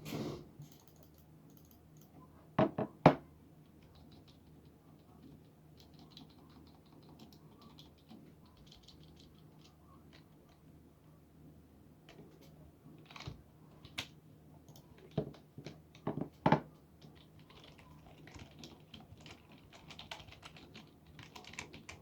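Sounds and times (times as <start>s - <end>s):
typing on computer keyboard: 0.7s - 2.1s, 3.8s - 10.6s, 12.1s - 14.1s, 17.0s - 22.0s.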